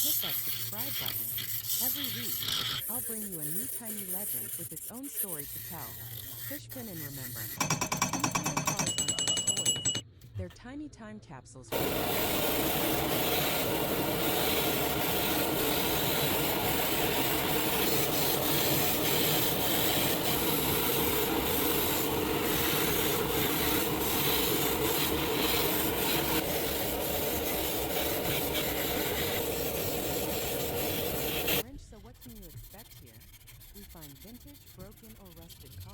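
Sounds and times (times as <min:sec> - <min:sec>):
abrasive rubbing and scraping: 0:00.0 - 0:07.8, 0:11.7 - 0:31.6.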